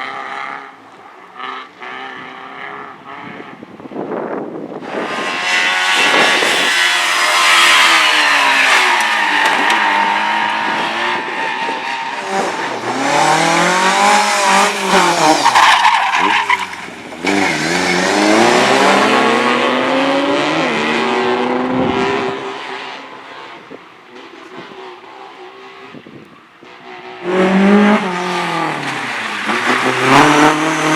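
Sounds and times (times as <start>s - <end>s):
race car engine revving: 4.7s - 30.9s
tyres squealing: 14.7s - 18.8s.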